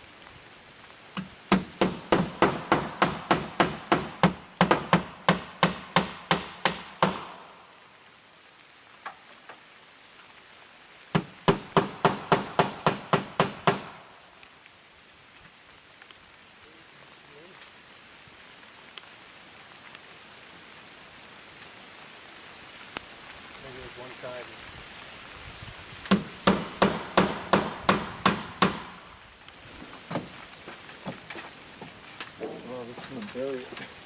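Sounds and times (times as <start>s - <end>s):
hammer driving nails: 1.5s - 7.3s, 26.1s - 28.9s.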